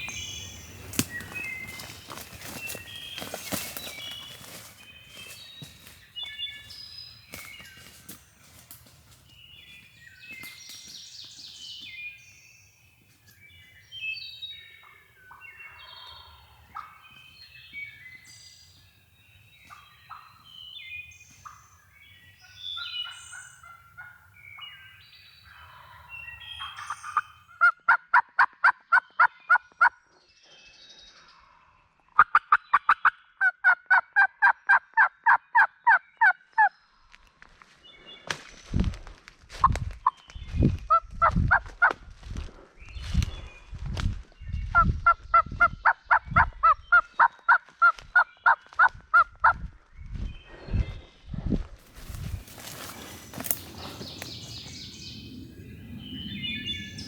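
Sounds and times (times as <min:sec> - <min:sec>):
small birds chirping and singing: 0:00.0 - 0:27.6, 0:42.3 - 0:57.0.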